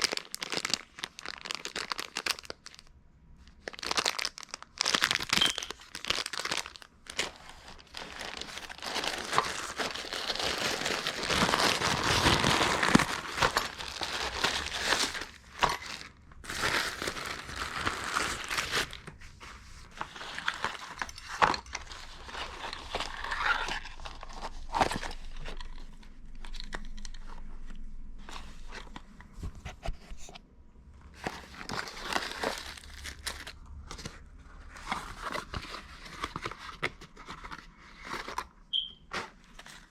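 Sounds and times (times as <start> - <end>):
plastic crackling: 0.0 - 2.9, 3.5 - 19.2, 31.1 - 39.9
plastic packaging crinkling: 0.0 - 2.9, 3.5 - 19.2, 19.8 - 29.0, 31.1 - 39.9
plastic tearing: 0.0 - 2.9, 3.6 - 19.1, 31.2 - 38.5.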